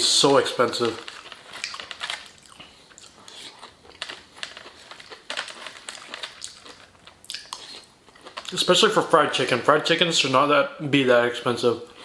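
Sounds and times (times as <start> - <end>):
chewing crispy fried chicken: 0.2 - 8.8.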